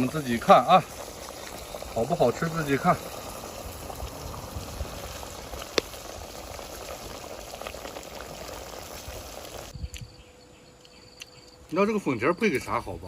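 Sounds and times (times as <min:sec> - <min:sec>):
stew bubbling in a pot: 0:00.0 - 0:09.8.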